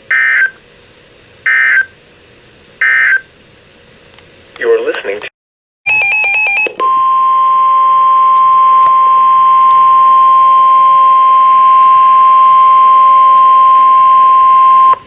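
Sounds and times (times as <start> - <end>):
steady alarm beep: 0.1 - 0.6, 1.5 - 1.9, 2.8 - 3.3, 5.9 - 15.0
faint radio static clicks: 4.0 - 5.3, 8.2 - 9.9, 11.0 - 12.2.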